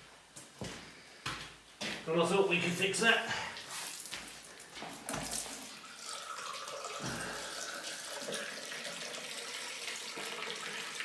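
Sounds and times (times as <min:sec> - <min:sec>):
water running into floor drain: 0:02.6 - 0:11.0.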